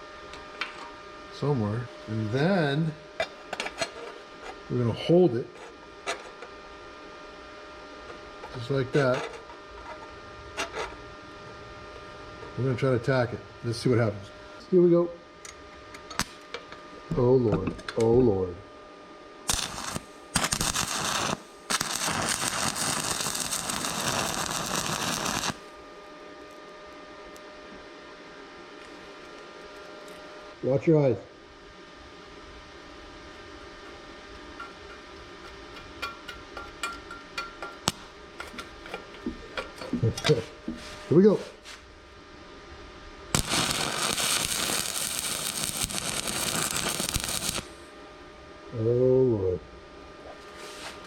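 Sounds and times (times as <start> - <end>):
welding machine humming: 19.4 - 27.8, 37.0 - 41.2, 43.3 - 48.0
welding arc crackling: 19.5 - 25.7, 43.3 - 47.9.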